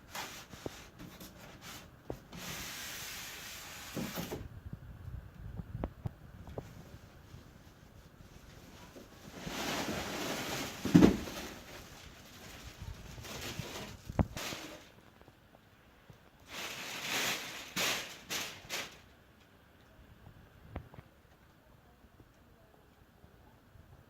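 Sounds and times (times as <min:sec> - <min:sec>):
wrapping rustling: 0:07.4 - 0:15.0, 0:16.4 - 0:19.1.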